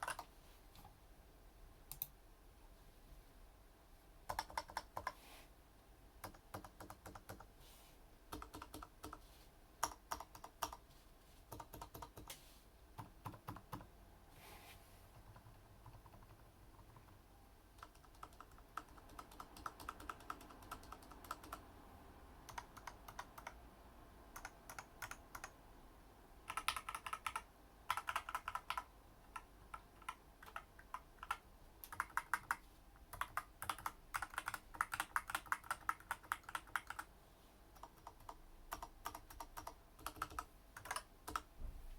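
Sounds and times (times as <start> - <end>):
mechanical keyboard typing: 0.0 - 0.3, 4.3 - 5.2, 6.2 - 7.5, 8.3 - 9.2, 9.8 - 10.8, 11.5 - 12.4, 13.0 - 13.9, 15.2 - 17.2, 17.8 - 21.6, 22.4 - 23.6, 24.4 - 25.6, 26.5 - 37.1, 37.7 - 41.5.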